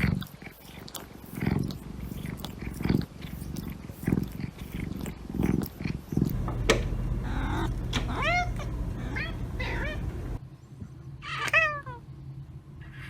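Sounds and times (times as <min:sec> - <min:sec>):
cat purring: 0:00.0 - 0:10.4.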